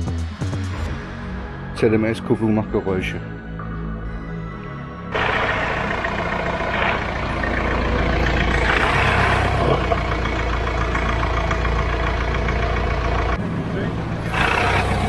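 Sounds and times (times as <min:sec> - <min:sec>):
van engine idling with clatter: 0:05.1 - 0:15.0.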